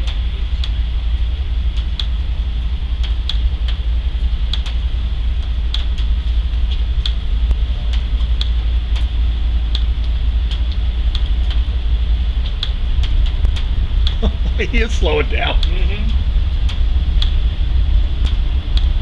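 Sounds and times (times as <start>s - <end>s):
freight train rumbling by: 0.0s - 19.0s
train wheel clicks: 1.7s - 2.2s, 3.0s - 9.1s, 9.7s - 11.7s, 12.4s - 14.3s, 15.5s - 15.8s, 16.5s - 17.4s, 18.2s - 19.0s.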